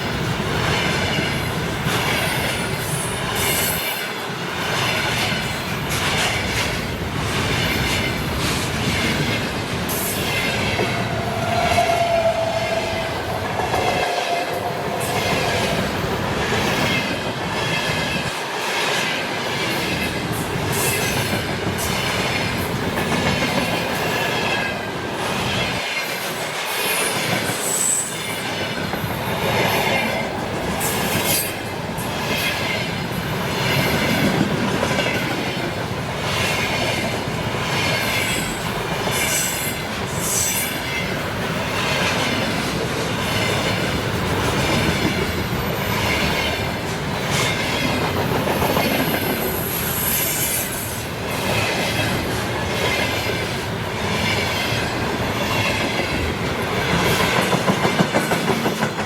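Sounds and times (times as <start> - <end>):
train wheel squeals: 0.7 - 6.6, 7.5 - 15.8, 25.4 - 34.4, 36.4 - 42.4, 43.3 - 59.0
train wheels clattering over rail joints: 55.4 - 59.0.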